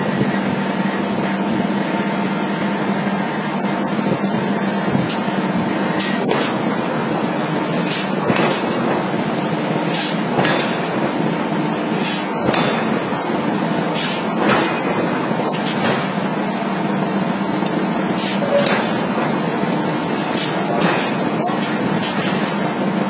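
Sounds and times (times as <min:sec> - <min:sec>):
steady machine hum: 0:00.0 - 0:23.0
hammer striking hot metal: 0:05.9 - 0:06.8, 0:07.8 - 0:09.2, 0:09.8 - 0:11.3, 0:11.9 - 0:22.6.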